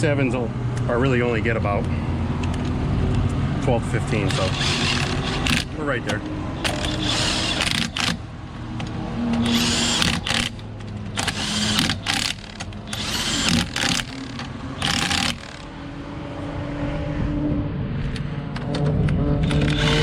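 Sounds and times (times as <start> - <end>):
impact wrench bursts: 4.2 - 5.8, 6.6 - 8.2, 9.4 - 15.7, 19.5 - 20.0.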